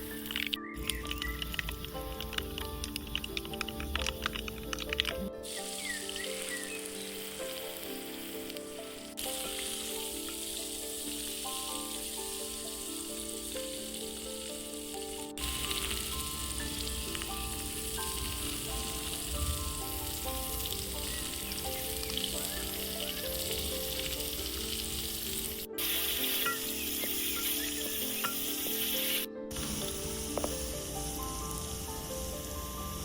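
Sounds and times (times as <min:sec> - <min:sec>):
food sizzling in hot oil: 0:00.0 - 0:33.0
soft melodic background music: 0:00.0 - 0:33.0.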